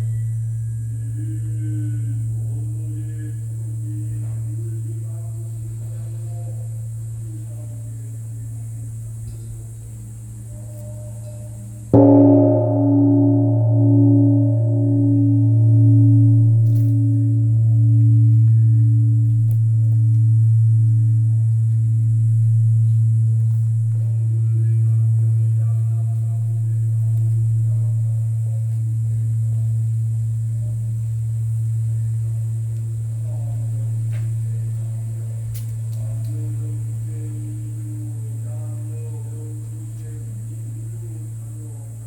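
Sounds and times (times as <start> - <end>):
bronze bell humming low: 0.0 - 42.0.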